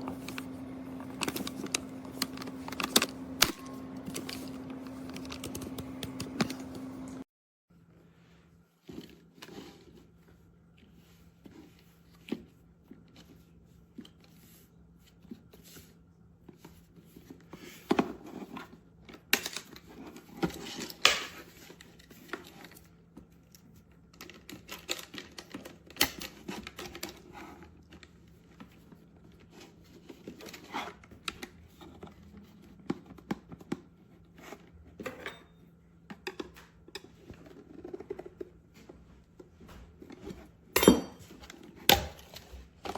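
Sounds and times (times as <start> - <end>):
faint steady hum: 0.0 - 8.6.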